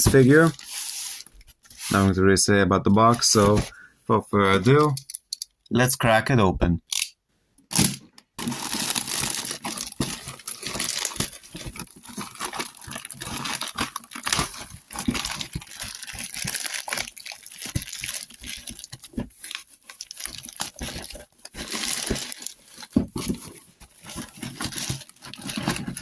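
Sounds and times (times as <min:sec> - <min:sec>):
packaging tearing and crinkling: 0:07.7 - 0:26.0.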